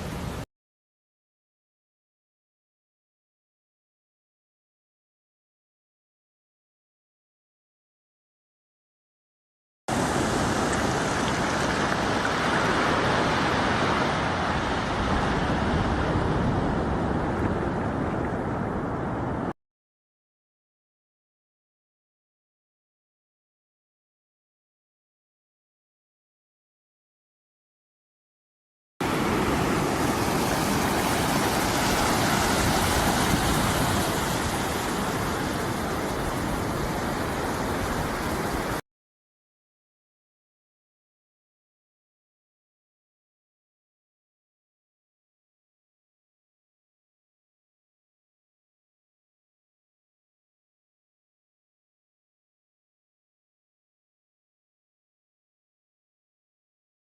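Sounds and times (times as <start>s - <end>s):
sea surf rushing: 0.0s - 0.4s, 9.9s - 19.5s, 29.0s - 38.8s
wind on microphone rumble: 10.0s - 19.5s, 29.1s - 38.8s
steady rushing noise: 29.0s - 38.8s.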